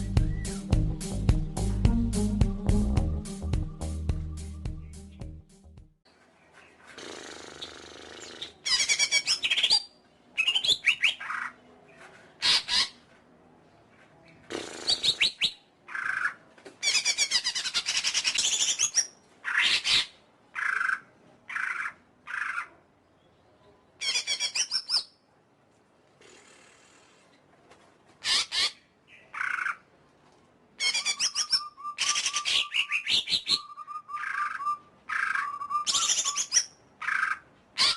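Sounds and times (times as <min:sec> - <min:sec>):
bird singing chirps and trills: 0:30.8 - 0:37.9.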